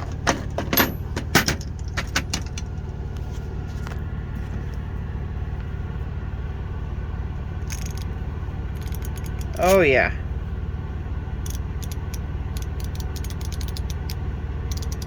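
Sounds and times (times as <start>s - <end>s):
metal tools clinking: 0.0s - 2.7s, 7.6s - 8.1s, 8.8s - 9.8s, 11.5s - 14.1s
steady low hum: 0.0s - 15.0s.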